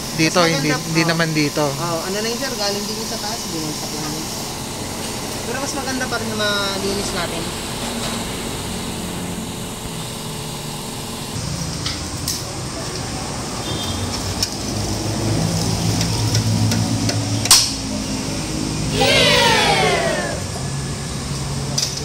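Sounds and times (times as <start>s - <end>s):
low engine-like hum: 14.7s - 21.8s.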